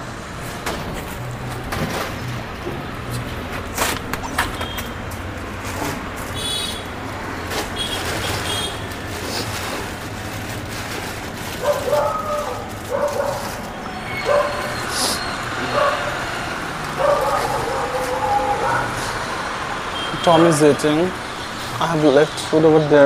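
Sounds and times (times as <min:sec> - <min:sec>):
street traffic hum: 0:00.0 - 0:23.0
dog barking: 0:11.6 - 0:13.6, 0:14.2 - 0:14.9, 0:15.6 - 0:16.2, 0:17.0 - 0:19.1.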